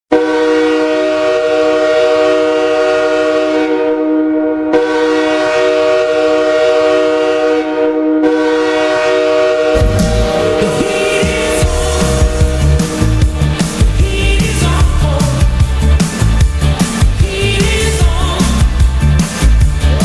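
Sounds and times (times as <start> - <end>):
hockey goal horn blast: 0.1 - 13.5
goal song music: 9.8 - 20.0.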